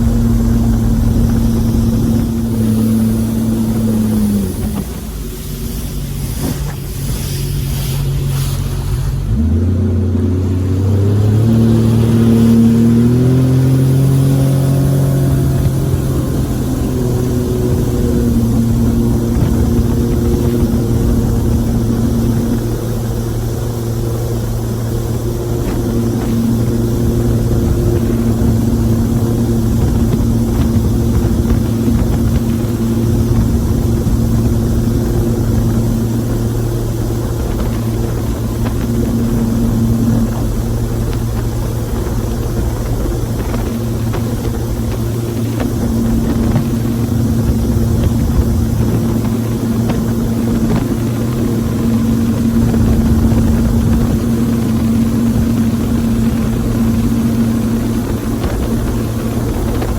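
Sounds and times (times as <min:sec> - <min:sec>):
jet boat engine running: 0:00.0 - 0:59.9.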